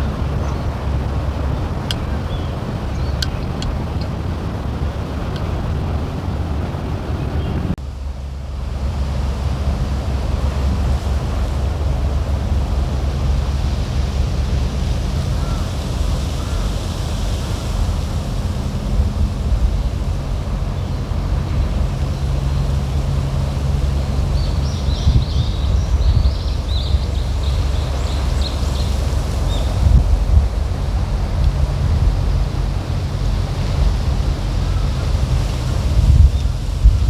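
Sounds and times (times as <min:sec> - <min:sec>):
low rumble: 0:00.0 - 0:37.0
wind buffeting microphone: 0:00.0 - 0:37.0
bird chirping: 0:02.0 - 0:04.2, 0:24.0 - 0:30.0.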